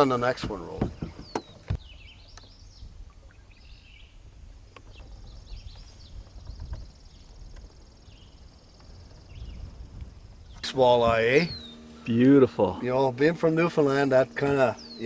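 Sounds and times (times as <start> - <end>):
low outdoor rumble: 0.0 - 15.0
songbirds chirping: 0.0 - 15.0
high buzzing trill: 10.4 - 15.0.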